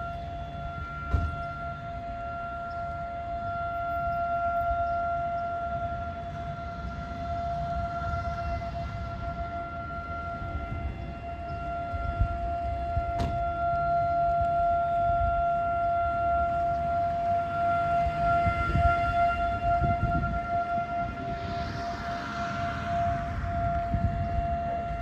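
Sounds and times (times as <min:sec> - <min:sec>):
warning siren steady tone: 0:00.0 - 0:25.0
low rumble: 0:16.4 - 0:25.0.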